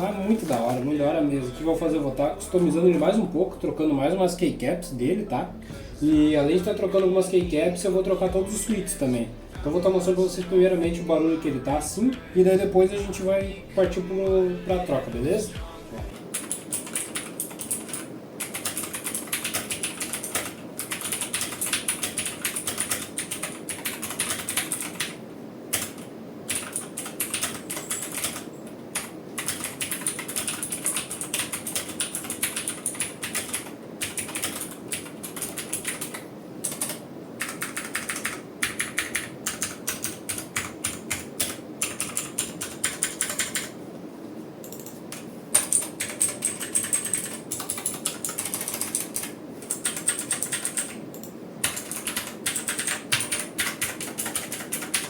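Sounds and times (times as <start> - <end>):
mechanical keyboard typing: 16.2 - 43.7, 44.6 - 55.0.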